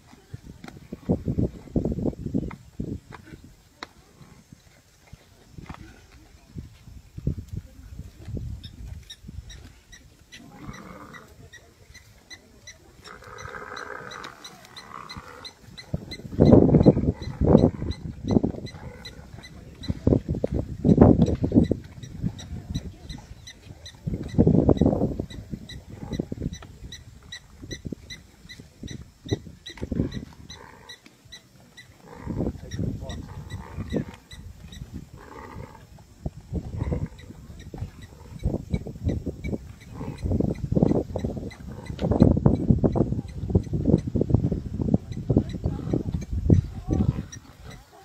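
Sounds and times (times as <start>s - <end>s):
drawn-out rough animal calls: 8.6s - 44.2s, 45.0s - 48.0s
animal grunts: 10.4s - 11.7s, 13.0s - 20.0s, 31.9s - 34.4s, 36.6s - 38.4s, 39.8s - 40.4s.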